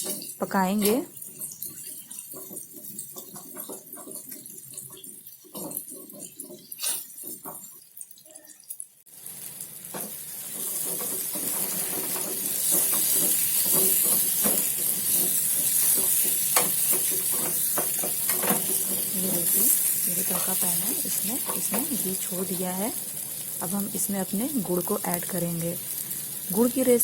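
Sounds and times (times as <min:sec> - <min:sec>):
spoon scraping a pan: 0:00.0 - 0:07.9, 0:09.9 - 0:22.6
paste sizzling in oil: 0:00.0 - 0:27.0.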